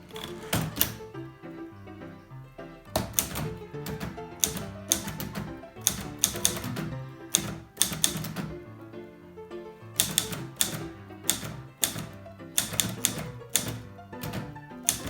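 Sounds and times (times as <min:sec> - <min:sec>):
typewriter key strikes: 0:00.0 - 0:01.1, 0:02.9 - 0:08.6, 0:10.0 - 0:15.0
background music: 0:00.0 - 0:15.0.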